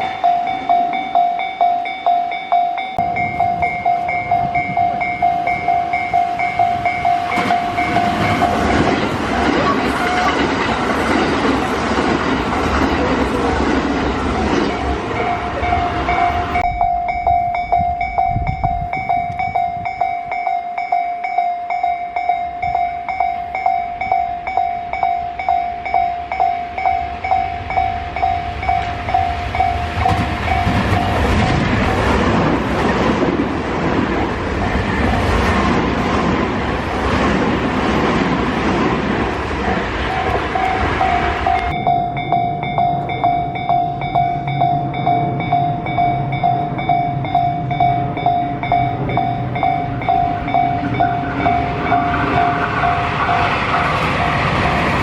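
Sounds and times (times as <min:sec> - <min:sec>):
level-crossing alarm bell: 0:00.0 - 0:12.7, 0:13.3 - 0:31.9, 0:39.9 - 0:55.0
train rumbling on tracks: 0:00.0 - 0:55.0
passing traffic rumble: 0:26.3 - 0:55.0.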